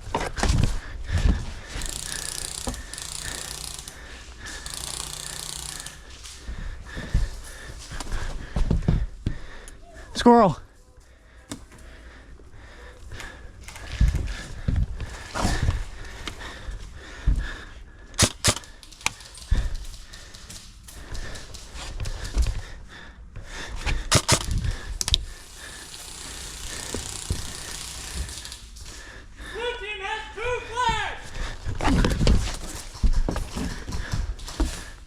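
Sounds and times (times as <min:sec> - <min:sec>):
airsoft gun cracks: 0:18.2 - 0:19.2, 0:24.1 - 0:24.5
thumps and rustling: 0:31.6 - 0:34.8.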